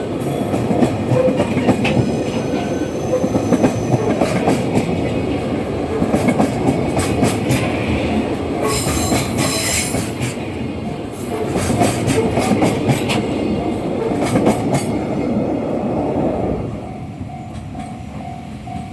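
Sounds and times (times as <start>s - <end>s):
train wheels clattering over rail joints: 0.5s - 15.4s
high wheel squeal: 8.6s - 10.0s.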